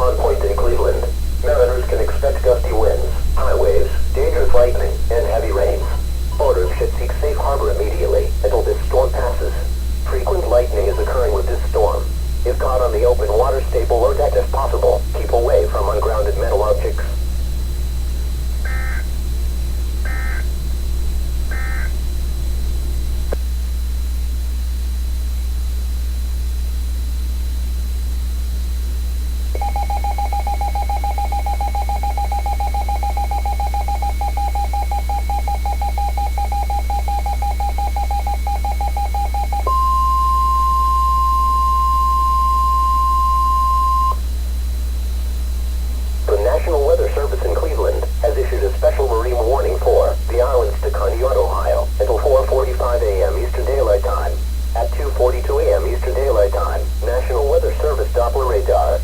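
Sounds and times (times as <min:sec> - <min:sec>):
data bursts: 0:00.0 - 0:17.2, 0:18.6 - 0:19.2, 0:20.0 - 0:20.6, 0:21.5 - 0:22.0, 0:29.6 - 0:44.3, 0:46.1 - 0:59.0
low hum: 0:00.0 - 0:59.0
steady warning tone: 0:00.0 - 0:59.0
pulsing two-tone attention signal: 0:29.6 - 0:44.2.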